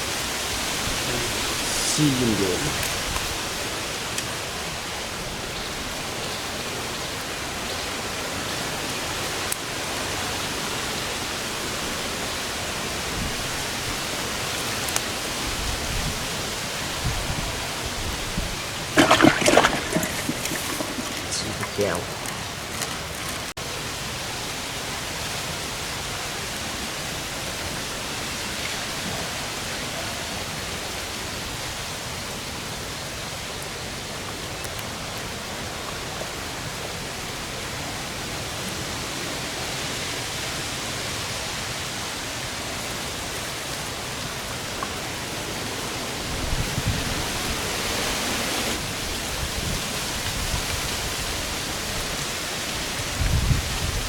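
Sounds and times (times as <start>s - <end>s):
falling water hiss: 0.0s - 4.5s, 18.7s - 23.6s.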